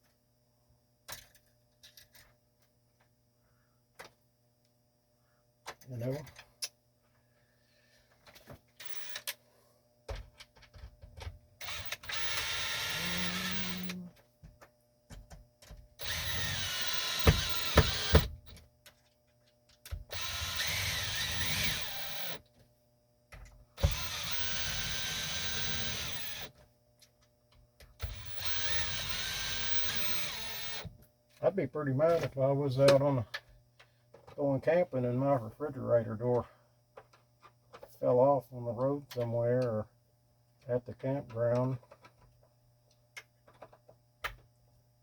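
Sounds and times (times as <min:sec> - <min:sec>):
power drill running: 0:11.6 - 0:14.0, 0:16.0 - 0:18.5, 0:20.1 - 0:22.4, 0:23.8 - 0:26.5, 0:28.0 - 0:30.9.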